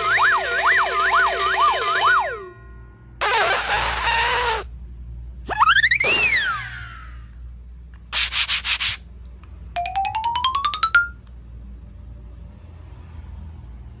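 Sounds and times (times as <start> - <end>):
beeping notes climbing in pitch: 9.8 - 11.2.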